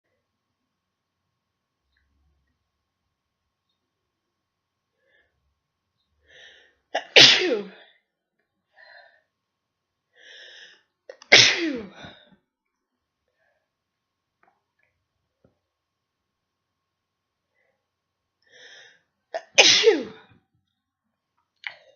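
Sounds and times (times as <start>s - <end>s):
person sneezing hard: 7.0s - 7.8s, 11.3s - 12.1s, 19.4s - 20.2s.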